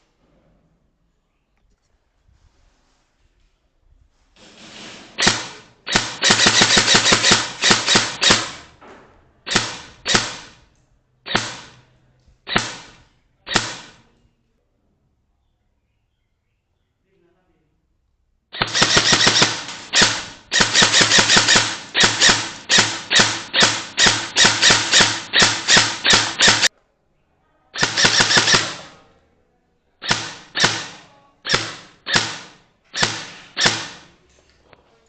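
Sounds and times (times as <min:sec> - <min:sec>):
airsoft gun full-auto bursts: 0:05.2 - 0:08.7, 0:09.5 - 0:10.6, 0:11.3 - 0:11.8, 0:12.5 - 0:14.0, 0:18.6 - 0:26.7, 0:27.8 - 0:29.0, 0:30.0 - 0:34.2.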